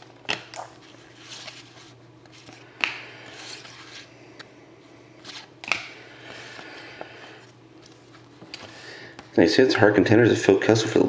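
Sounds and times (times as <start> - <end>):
trading cards sliding: 0.3 - 4.5, 5.2 - 8.8.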